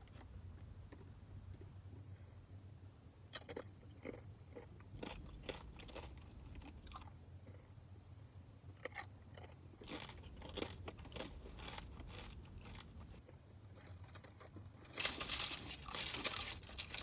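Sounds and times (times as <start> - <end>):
crunchy chewing of chips: 3.3 - 7.7, 8.8 - 17.0
wrapper crinkling: 9.9 - 13.2, 14.9 - 17.0.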